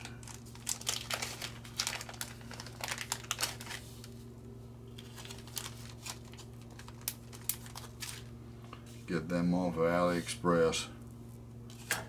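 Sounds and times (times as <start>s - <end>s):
plastic crinkling: 0.0s - 4.3s, 4.9s - 8.4s
steady low hum: 0.0s - 12.0s.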